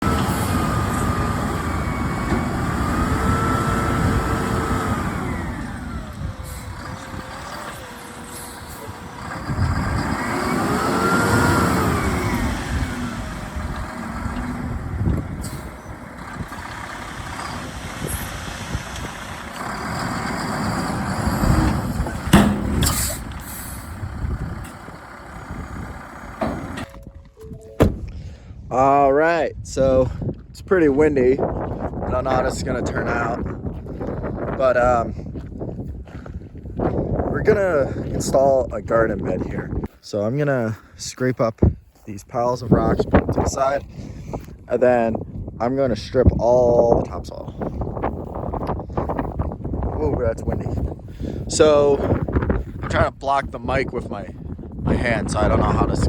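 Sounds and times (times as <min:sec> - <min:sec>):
diesel truck engine revving: 0:00.0 - 0:27.0
sharp knocks: 0:22.3 - 0:23.0.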